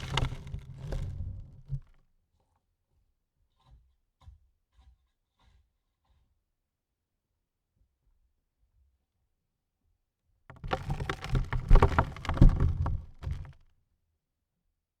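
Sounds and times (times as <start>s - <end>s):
dirt falling on coffin lid: 10.5s - 13.6s.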